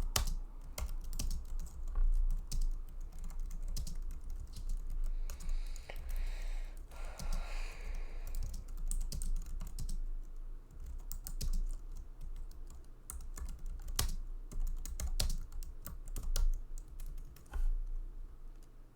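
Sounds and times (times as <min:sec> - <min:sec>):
keyboard typing clicks: 0:00.1 - 0:06.2, 0:08.3 - 0:10.0, 0:10.7 - 0:17.6.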